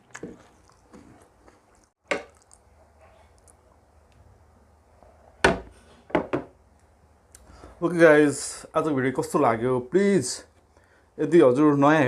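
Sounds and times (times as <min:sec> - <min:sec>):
person chewing: 0:00.0 - 0:03.9.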